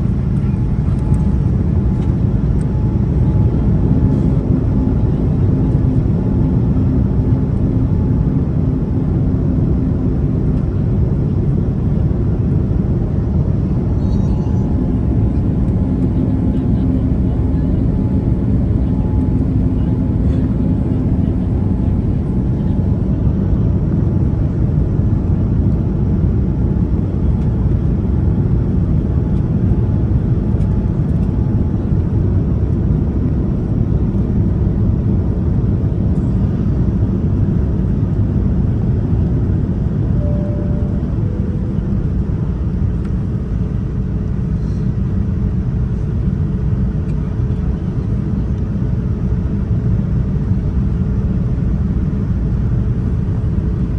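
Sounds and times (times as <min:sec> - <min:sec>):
airliner cabin rumble: 0:00.0 - 0:53.9
faint steady hums: 0:36.0 - 0:44.0
two-tone descending chime: 0:40.2 - 0:42.4.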